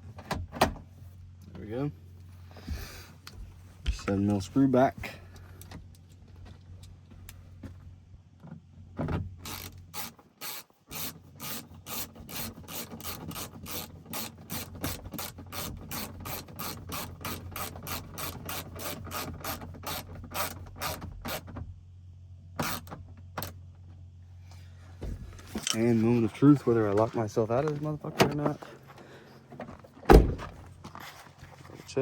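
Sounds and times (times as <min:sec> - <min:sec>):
ratchet wrench clicking: 0:09.4 - 0:21.4.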